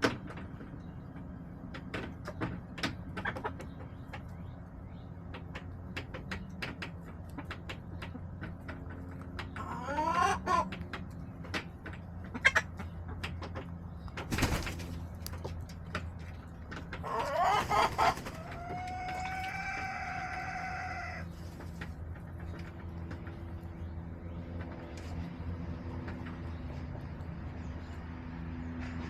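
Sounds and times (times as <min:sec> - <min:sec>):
hens clucking softly: 0:02.1 - 0:23.9
rooster crowing: 0:18.4 - 0:21.2.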